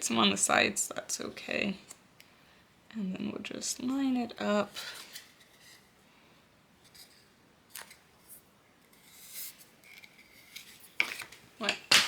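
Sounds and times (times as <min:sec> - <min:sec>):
soft paper rustles: 0:04.7 - 0:06.0, 0:06.8 - 0:11.4.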